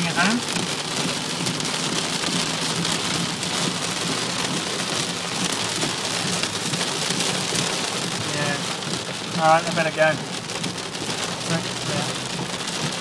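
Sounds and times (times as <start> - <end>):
heavy rain pattering: 0.0 - 13.0.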